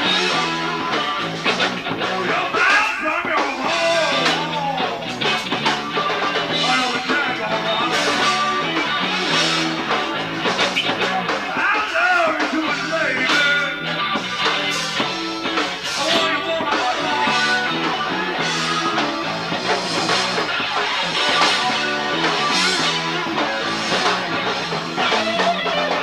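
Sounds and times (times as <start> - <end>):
bass guitar: 0.0 - 26.0
drums: 0.0 - 26.0
guitar: 0.0 - 26.0.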